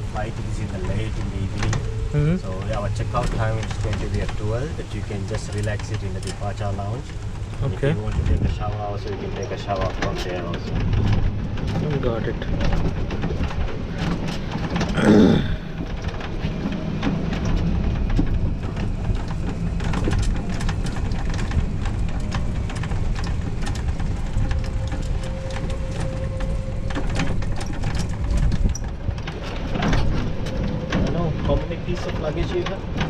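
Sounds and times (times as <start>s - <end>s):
small rattles and clicks: 0.0s - 33.0s
wind rumbling on microphone: 0.0s - 33.0s.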